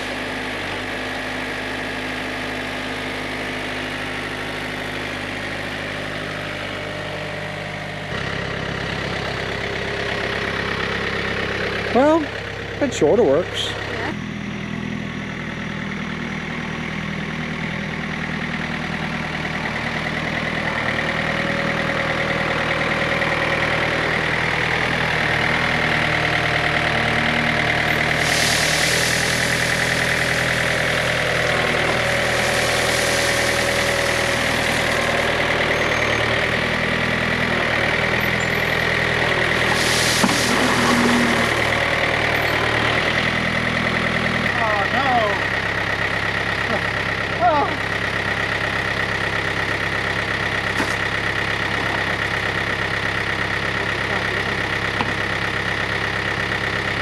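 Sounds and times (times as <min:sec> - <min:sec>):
diesel engine running: 0:00.0 - 0:57.0
rushing hissing noises: 0:28.0 - 0:31.0.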